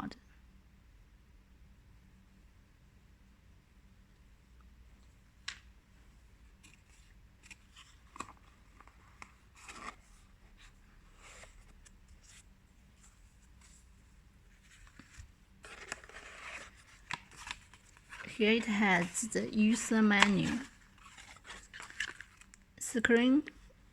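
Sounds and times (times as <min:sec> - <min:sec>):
packaging clicks and rustles: 0:14.6 - 0:22.8.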